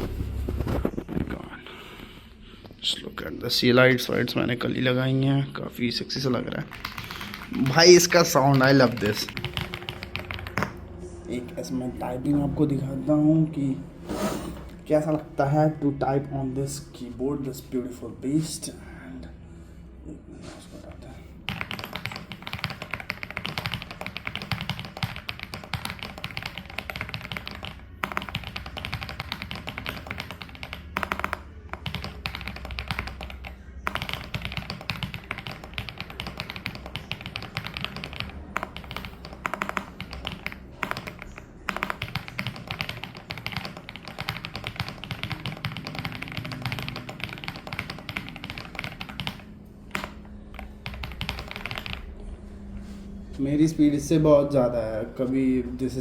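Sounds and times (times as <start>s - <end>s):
mechanical keyboard typing: 6.7s - 10.8s, 21.4s - 52.1s.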